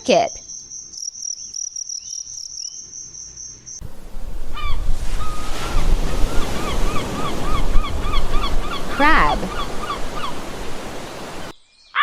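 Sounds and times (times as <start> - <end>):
cricket chirping: 0.4 - 3.8
surf-like rushing noise: 3.8 - 11.5.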